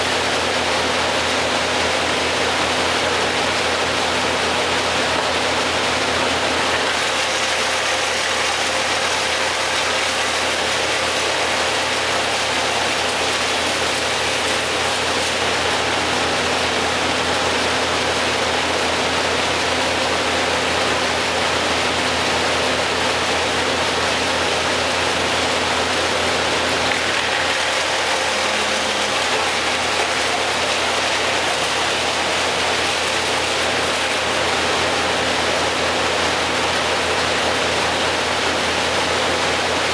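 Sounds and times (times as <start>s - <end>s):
large engine running: 0.0s - 39.9s.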